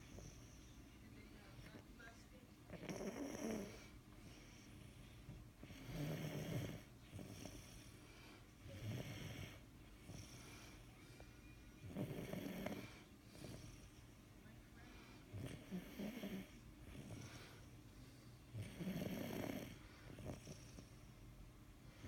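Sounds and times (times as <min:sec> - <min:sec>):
loud snoring: 0:02.7 - 0:03.9, 0:05.6 - 0:07.8, 0:08.7 - 0:10.4, 0:11.8 - 0:13.8, 0:15.3 - 0:17.4, 0:18.6 - 0:20.8.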